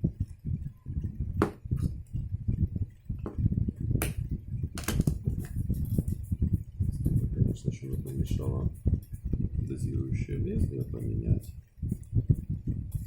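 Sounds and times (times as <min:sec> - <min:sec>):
plastic clicks and knocks: 0:04.8 - 0:05.5.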